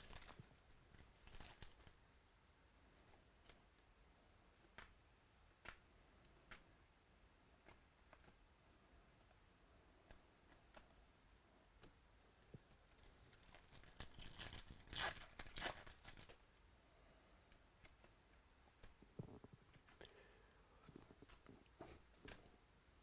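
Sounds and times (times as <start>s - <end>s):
foil wrapper tearing and crinkling: 0.0s - 1.8s, 13.4s - 16.4s.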